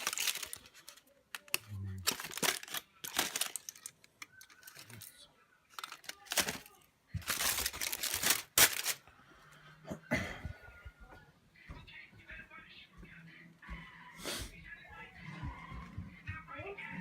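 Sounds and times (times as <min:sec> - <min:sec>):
wrapper crinkling: 0:00.0 - 0:09.1.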